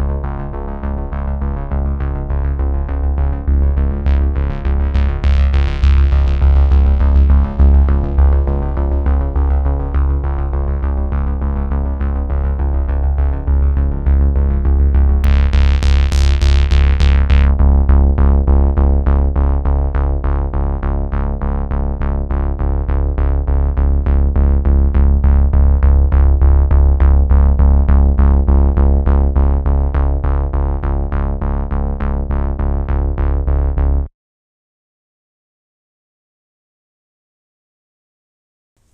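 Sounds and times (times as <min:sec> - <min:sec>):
electronic synthesizer music: 0:15.2 - 0:17.6.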